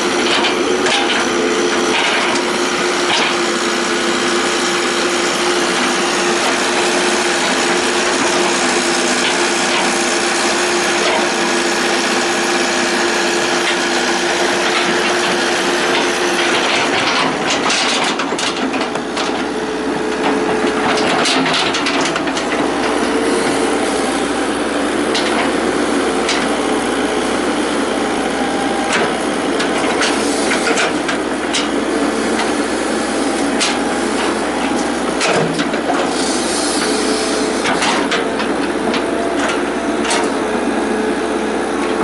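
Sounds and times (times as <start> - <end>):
excavator diesel engine running: 0.0 - 42.0.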